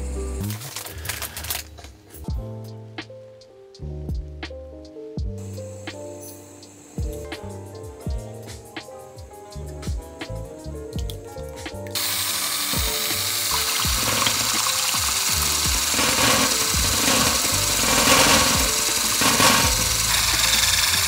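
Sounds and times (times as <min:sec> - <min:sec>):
background music: 0:00.0 - 0:21.0
electric hand mixer running: 0:12.0 - 0:21.0.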